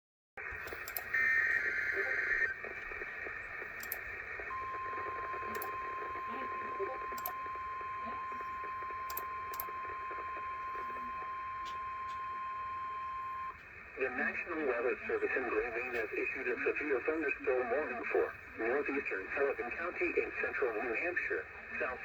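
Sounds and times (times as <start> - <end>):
faint static clicks: 0.4 - 22.0
radio hiss: 0.4 - 22.0
steady attention tone: 0.7 - 2.6, 3.7 - 13.5.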